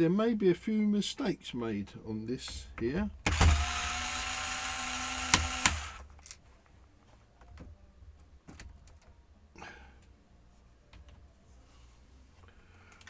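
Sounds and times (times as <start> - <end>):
electric screwdriver running: 3.3 - 6.1
sharp clicks: 3.3 - 6.2.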